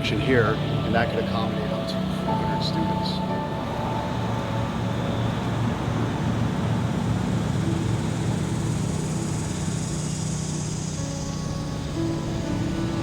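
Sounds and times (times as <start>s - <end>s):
hiss: 0.0s - 13.0s
motor vehicle hum: 0.0s - 13.0s
road noise: 0.0s - 13.0s.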